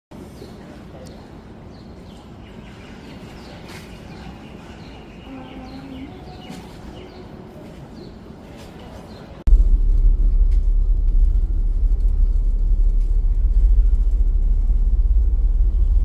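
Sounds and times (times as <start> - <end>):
small birds chirping: 0.2 - 9.4
steady low rumble: 9.4 - 16.0.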